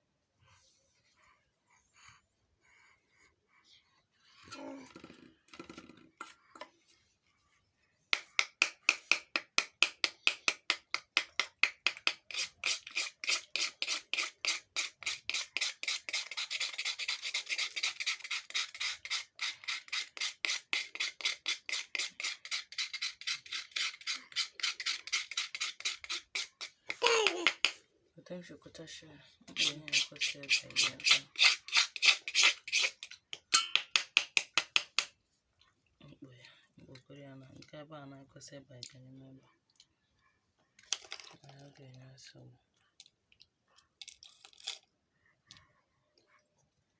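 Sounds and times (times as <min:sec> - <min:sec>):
rapid rasping scraping strokes: 0:12.2 - 0:27.0, 0:29.5 - 0:33.1.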